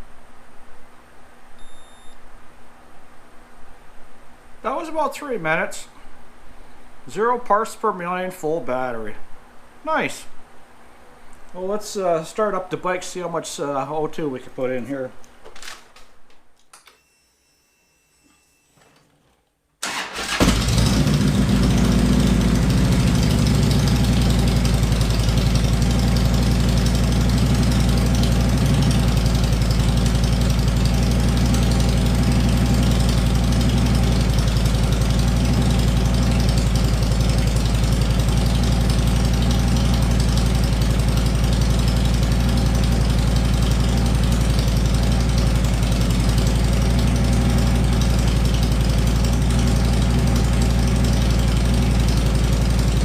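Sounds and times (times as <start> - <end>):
motorcycle engine idling: 20.2 - 53.0.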